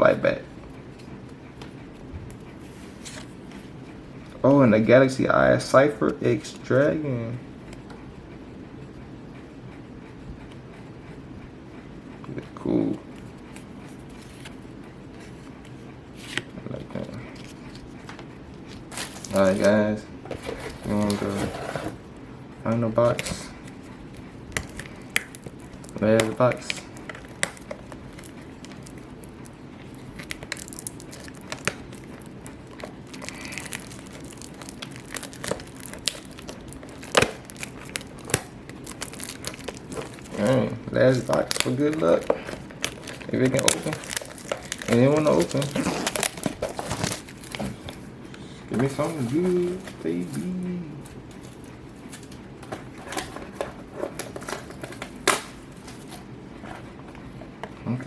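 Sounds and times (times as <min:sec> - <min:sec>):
packaging crinkling and rustling: 0:13.5 - 0:22.1, 0:24.5 - 0:48.1, 0:48.7 - 0:58.0.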